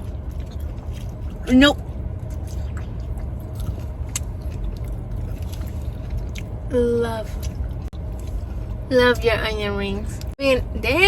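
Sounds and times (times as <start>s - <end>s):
chewing and food handling clicks: 0.0s - 6.6s
idling car rumble: 0.0s - 11.0s.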